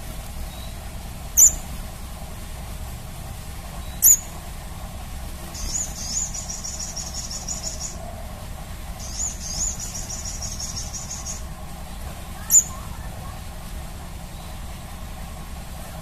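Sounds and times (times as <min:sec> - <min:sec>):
bird singing rising notes and trill: 0:00.5 - 0:01.6, 0:03.8 - 0:04.3, 0:05.5 - 0:08.1, 0:09.0 - 0:11.5, 0:12.4 - 0:12.8.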